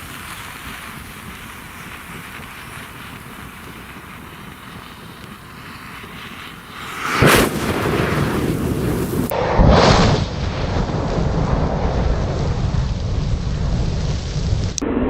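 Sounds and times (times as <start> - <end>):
matches hissing and crackling: 0.0 - 9.3, 13.5 - 14.8
match heads flaring with whoosh: 6.7 - 11.9.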